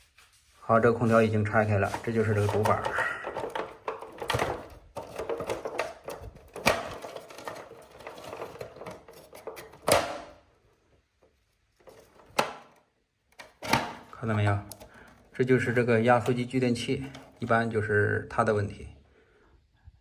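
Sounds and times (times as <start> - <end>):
plastic casing clicking and rattling: 2.3 - 10.4, 11.3 - 17.5.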